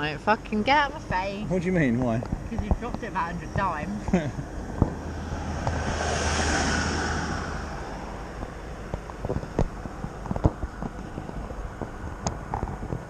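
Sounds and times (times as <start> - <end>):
passing vehicle hum: 0.0 - 13.0
small clicks and knocks: 8.4 - 13.0.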